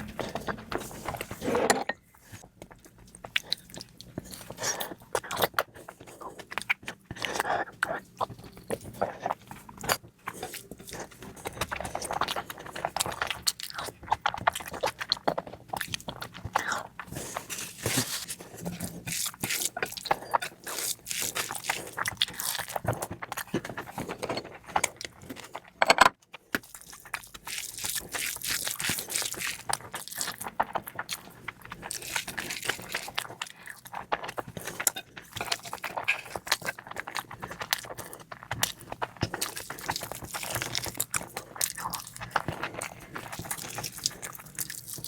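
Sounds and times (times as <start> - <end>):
wet chewing: 26.6 - 45.0.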